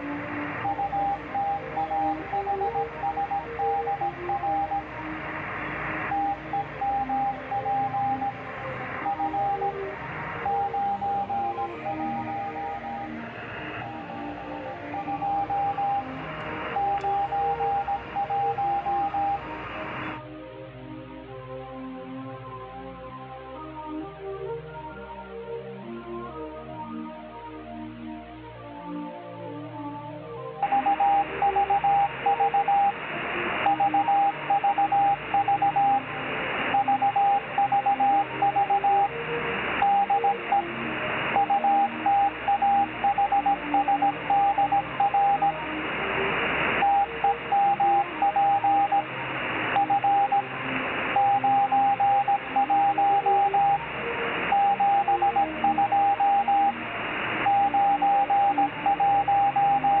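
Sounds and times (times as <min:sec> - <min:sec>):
morse code beeping tone: 0:00.0 - 0:20.2
radio hiss: 0:00.0 - 0:20.2.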